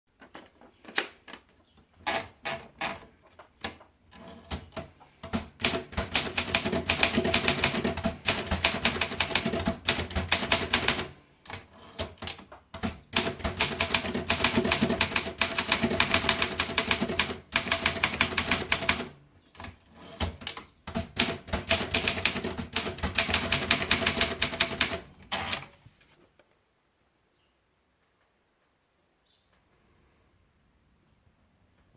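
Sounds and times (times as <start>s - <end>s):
manual typewriter typing: 2.0s - 25.8s.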